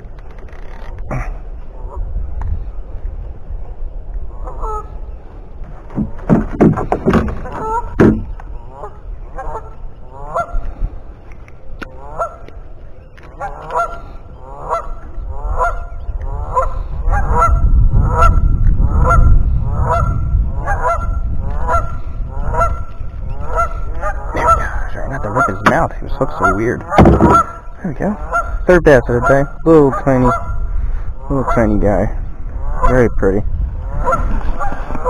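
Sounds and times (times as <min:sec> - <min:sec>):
goose honking: 0:12.0 - 0:12.5, 0:13.4 - 0:18.4, 0:23.4 - 0:30.6.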